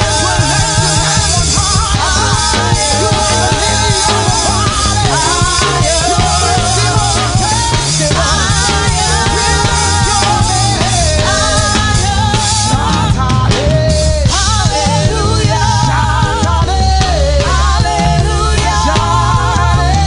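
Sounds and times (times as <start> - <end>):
church band playing: 0.0 - 20.0
voices singing: 0.0 - 20.0.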